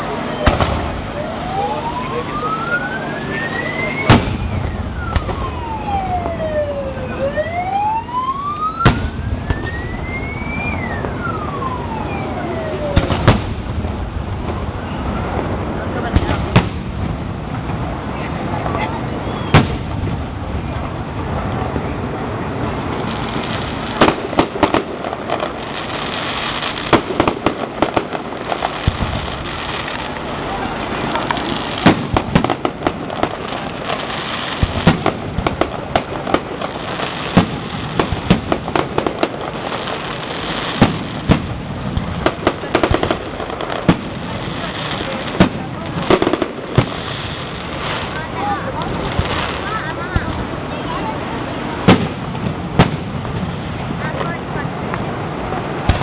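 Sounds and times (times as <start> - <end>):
firework bangs: 0.0 - 2.4, 3.0 - 7.2, 7.9 - 56.0
siren wailing: 1.0 - 13.3.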